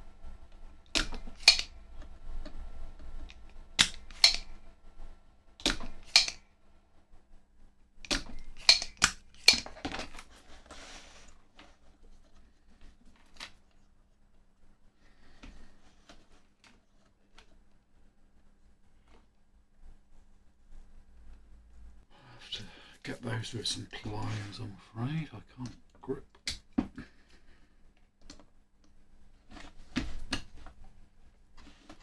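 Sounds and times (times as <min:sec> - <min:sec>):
hand tool clicks and snaps: 0:00.9 - 0:02.1, 0:03.2 - 0:04.6, 0:05.6 - 0:06.5, 0:08.0 - 0:09.8.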